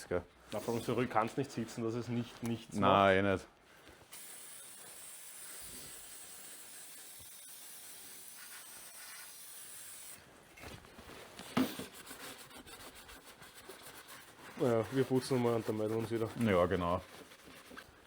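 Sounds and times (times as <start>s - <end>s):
pressurized spray hissing: 4.2s - 10.2s.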